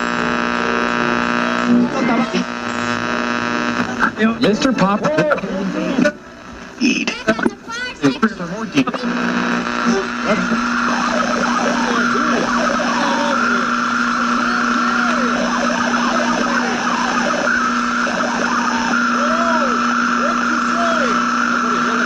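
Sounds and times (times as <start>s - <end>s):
radio static hiss and hum: 0.0s - 22.0s
high radio whistle: 9.0s - 22.0s.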